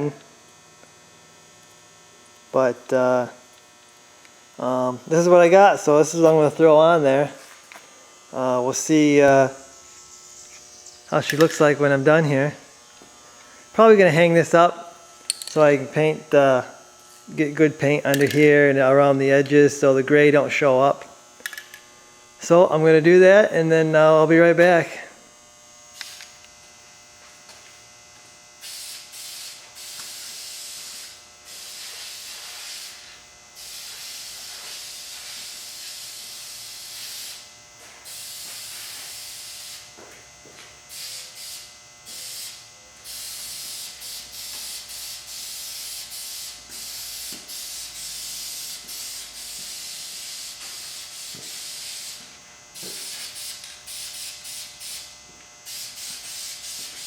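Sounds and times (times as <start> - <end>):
steady electrical hum: 0.0 - 57.0
spray paint can hissing: 26.0 - 26.3, 28.6 - 39.8, 40.9 - 57.0.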